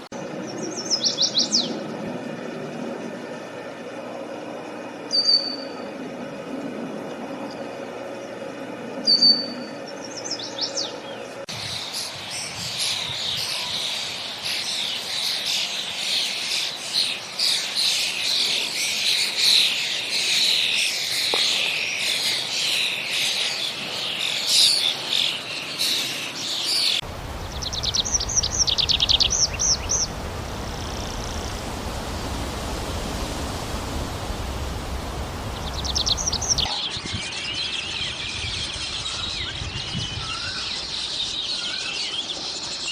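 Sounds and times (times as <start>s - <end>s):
birds calling and chirping: 0.3s - 2.0s, 5.0s - 5.8s, 7.4s - 42.9s
fast rattling bird trill: 11.5s - 32.9s, 33.7s - 40.6s
insects chirping: 11.5s - 36.7s
rushing background with low rumble: 27.0s - 36.7s.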